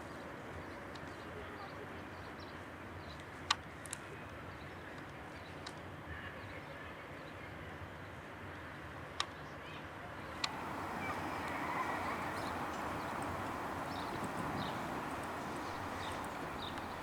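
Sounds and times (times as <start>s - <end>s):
steady background hiss: 10.5s - 17.0s.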